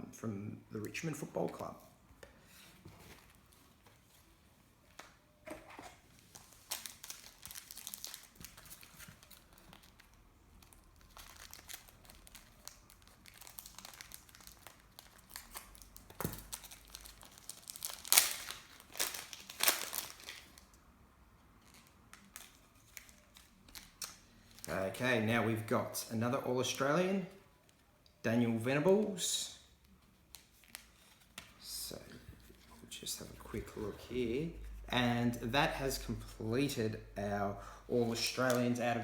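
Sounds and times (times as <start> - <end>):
card pack wrapper crinkling: 6.2 - 20.7.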